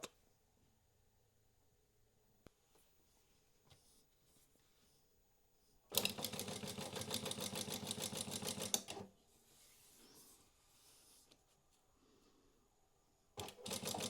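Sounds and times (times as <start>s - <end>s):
sewing machine stitching: 5.9s - 9.1s, 13.4s - 14.0s
sewing machine clack: 13.4s - 14.0s.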